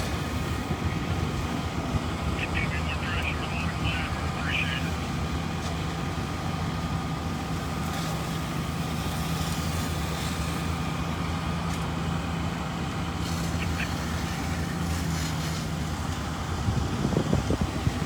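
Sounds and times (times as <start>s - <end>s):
fire truck engine idling: 0.0s - 18.0s
faint steady whine: 0.1s - 5.6s.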